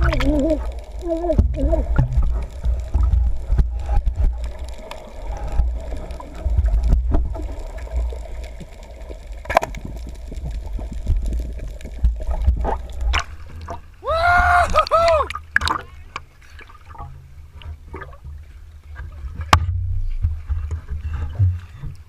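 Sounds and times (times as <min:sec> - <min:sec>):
low rumble: 0:00.0 - 0:13.0.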